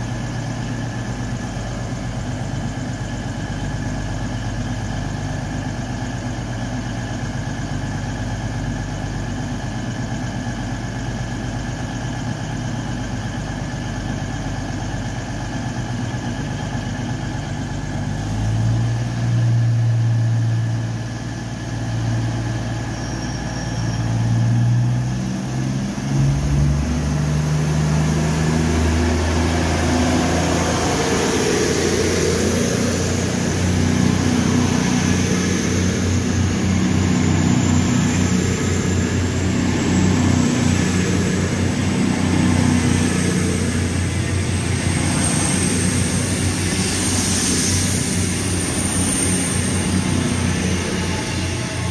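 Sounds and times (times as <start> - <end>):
train engine humming: 0.0 - 51.9
rushing noise: 25.6 - 51.9.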